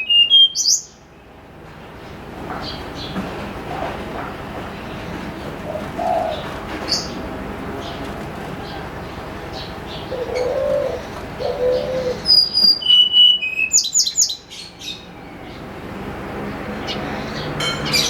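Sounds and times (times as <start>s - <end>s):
bird whistled song: 0.0s - 1.0s, 11.4s - 15.0s
dove cooing: 5.4s - 7.2s, 7.8s - 12.4s.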